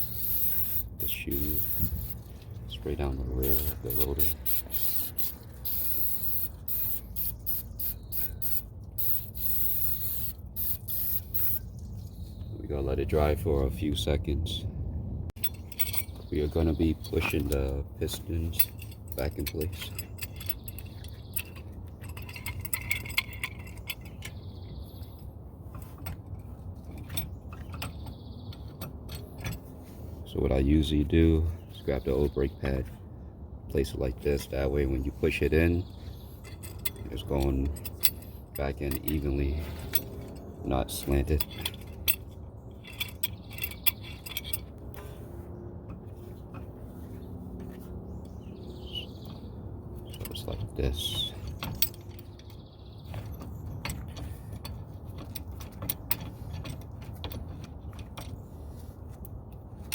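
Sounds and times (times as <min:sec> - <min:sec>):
light metallic clicks and clinks: 0:00.0 - 0:11.6, 0:15.3 - 0:24.8, 0:25.7 - 0:29.8, 0:33.8 - 0:45.2, 0:49.2 - 0:59.9
metallic clicks of hand tools: 0:18.5 - 0:24.4, 0:36.4 - 0:45.1.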